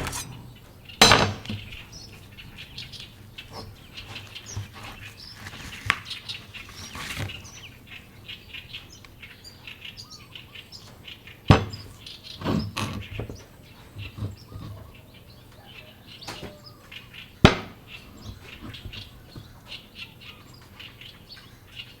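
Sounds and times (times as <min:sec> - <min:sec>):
knife chopping into coconut: 0:00.0 - 0:00.4, 0:03.6 - 0:07.4
birds chirping: 0:00.0 - 0:22.0.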